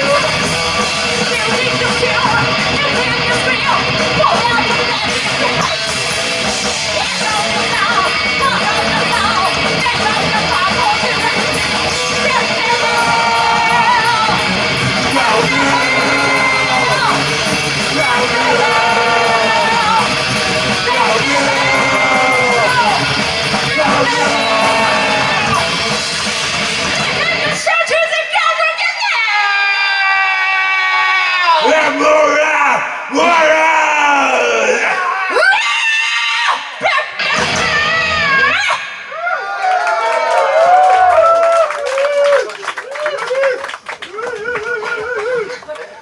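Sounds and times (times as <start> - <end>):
heavy metal band playing: 0.0 - 28.2
person singing: 15.0 - 17.3, 20.8 - 25.7.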